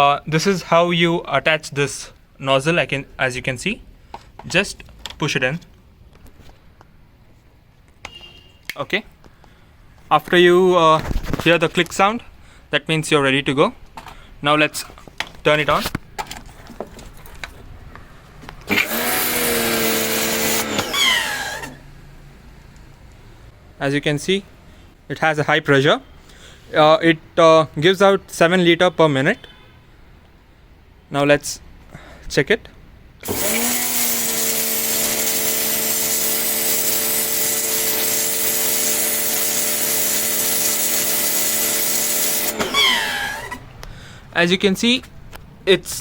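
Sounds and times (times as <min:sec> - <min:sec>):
motor hum: 0:18.7 - 0:21.8, 0:33.2 - 0:43.6
pressure washer water jet hissing: 0:18.7 - 0:21.8, 0:33.2 - 0:43.6
falling motor whine: 0:18.7 - 0:21.9, 0:33.2 - 0:43.6.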